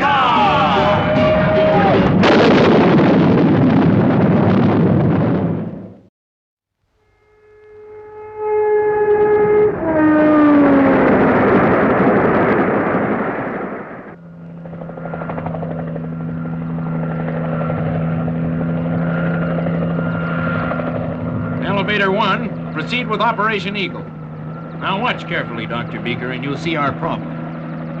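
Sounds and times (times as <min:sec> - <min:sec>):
faint high whine: 0:06.9 - 0:09.9, 0:10.5 - 0:20.8
passing whoosh dropping in pitch: 0:07.1 - 0:16.8
helicopter engine and rotor drone: 0:10.7 - 0:28.0.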